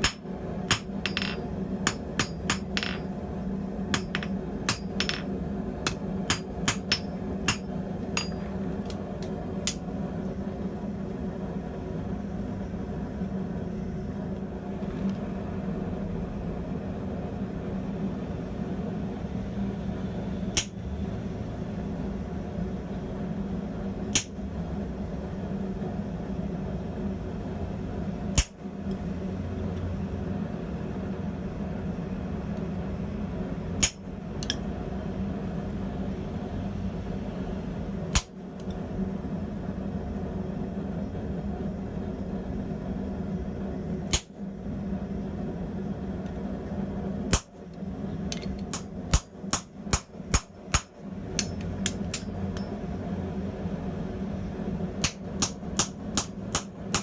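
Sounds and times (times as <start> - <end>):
hammer striking steel on anvil: 0.0 - 3.2, 3.9 - 8.6, 9.6 - 9.9, 20.5 - 20.8, 24.1 - 24.4, 28.4 - 28.6, 33.8 - 34.7, 38.1 - 38.4, 48.3 - 52.8, 55.0 - 57.0
steady hum: 0.0 - 57.0.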